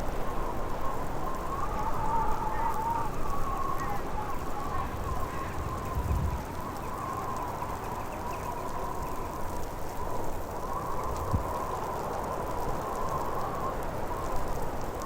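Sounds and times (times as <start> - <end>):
low gusty rumble: 0.0 - 11.6
howling blizzard wind: 0.0 - 15.0.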